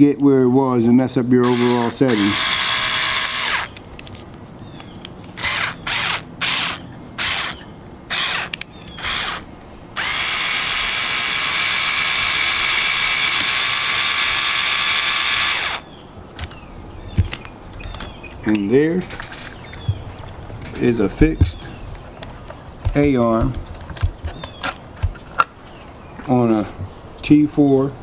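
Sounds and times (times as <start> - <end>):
power screwdriver motor whine: 1.4 - 3.7, 5.4 - 9.4, 10.0 - 15.8.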